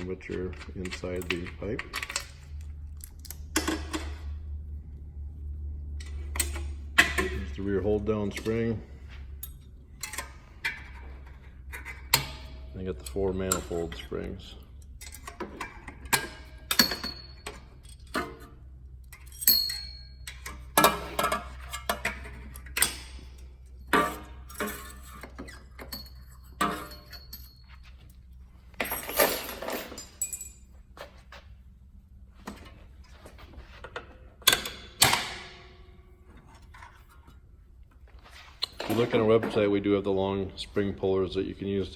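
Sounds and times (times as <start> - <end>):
sharp metal clinks and clanks: 16.1 - 18.3, 19.1 - 30.8.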